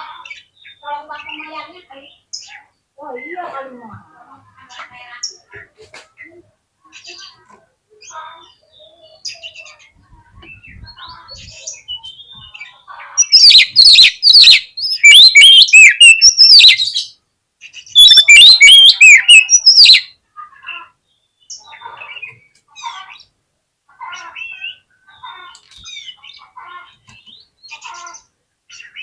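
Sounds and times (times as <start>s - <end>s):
faint bird chirps: 4.6s - 23.3s
bird whistled song: 13.2s - 17.2s, 17.8s - 20.1s.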